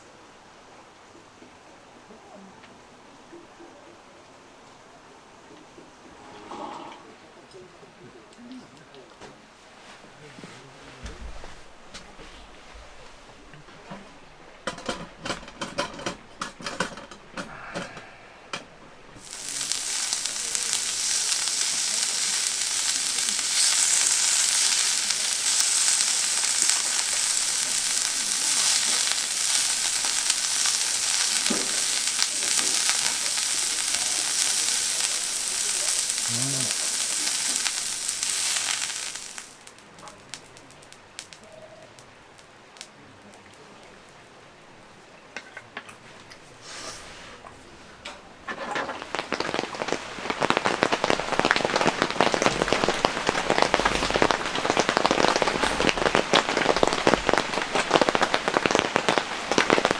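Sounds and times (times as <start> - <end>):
food sizzling in hot oil: 19.2 - 41.4, 48.5 - 59.9.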